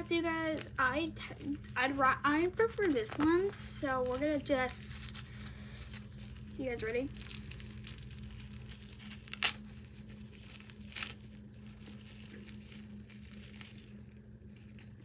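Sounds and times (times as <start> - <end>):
paper crinkling: 0.0 - 15.0
paper ripping: 0.0 - 15.0
paper rustling: 0.0 - 15.0.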